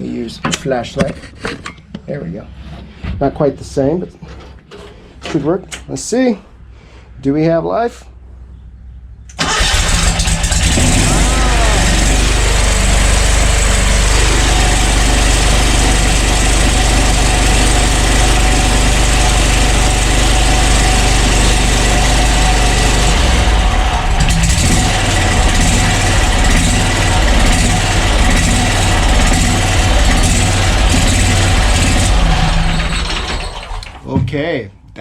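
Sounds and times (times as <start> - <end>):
mower engine running: 9.4 - 34.0.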